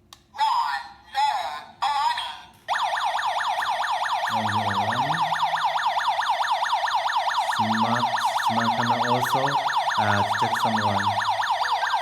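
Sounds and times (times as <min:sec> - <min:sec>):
alarm siren wailing: 0:02.7 - 0:12.0.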